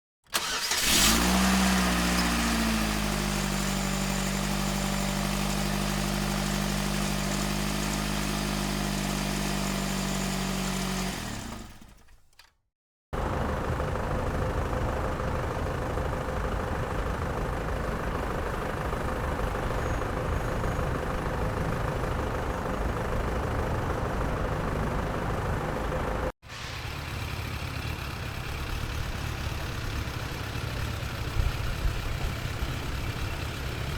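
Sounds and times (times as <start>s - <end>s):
engine starting and idling: 0.2s - 12.6s, 13.2s - 33.9s
rough engine rumble: 0.3s - 12.2s, 13.2s - 33.9s
quieter engine rumble: 13.2s - 33.9s.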